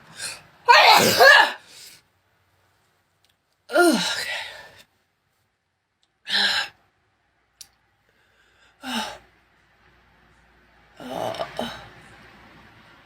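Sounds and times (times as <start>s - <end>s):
person sneezing: 0.2s - 1.9s.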